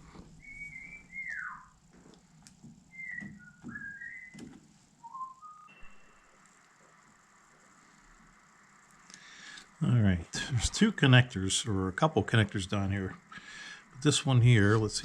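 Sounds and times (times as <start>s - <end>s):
person whistling a tune: 0.4s - 1.7s, 3.0s - 4.4s, 5.0s - 6.0s.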